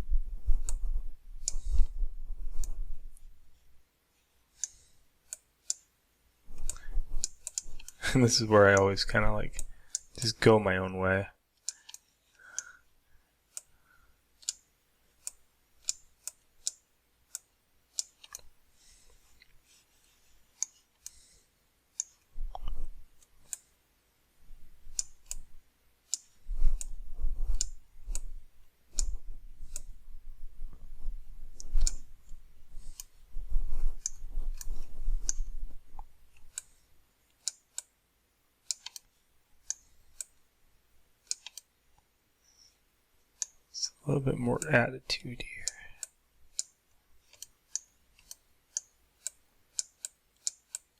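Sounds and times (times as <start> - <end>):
mouse and keyboard clicks: 0.6 - 1.9, 14.4 - 18.5, 28.9 - 29.9, 31.6 - 32.1, 38.6 - 40.3, 41.2 - 41.7.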